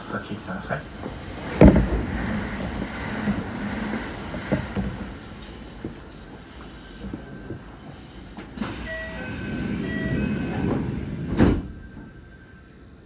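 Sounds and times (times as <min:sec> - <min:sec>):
sliding doors shutting with thud: 0:01.0 - 0:06.4, 0:07.1 - 0:12.1
door-closing chime: 0:08.6 - 0:10.8.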